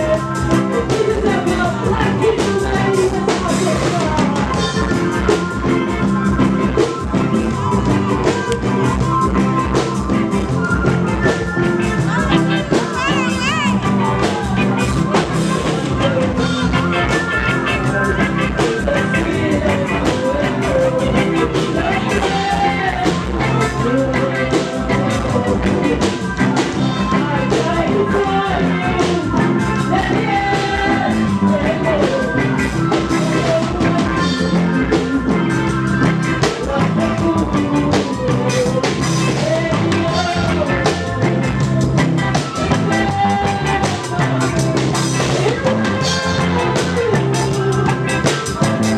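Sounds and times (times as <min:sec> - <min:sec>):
drum kit beat: 0:00.0 - 0:48.9
person singing: 0:00.0 - 0:48.9
reggae band playing: 0:00.0 - 0:48.9.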